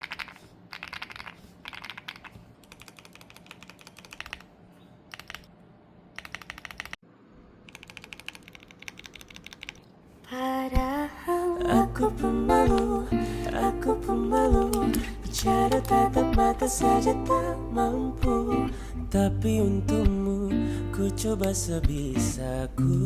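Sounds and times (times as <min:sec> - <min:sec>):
mechanical keyboard typing: 0:00.0 - 0:04.5, 0:05.1 - 0:05.5, 0:06.2 - 0:07.0, 0:07.7 - 0:09.9.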